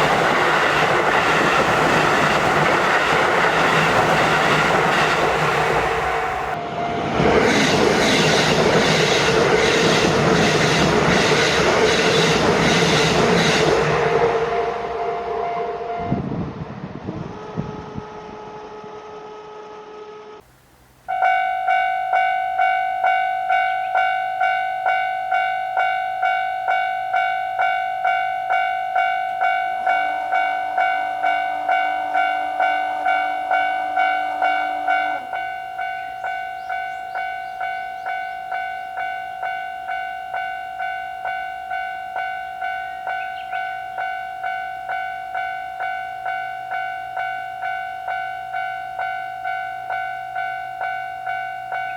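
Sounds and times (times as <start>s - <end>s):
level crossing warning bell: 0.0s - 6.6s, 21.0s - 51.9s.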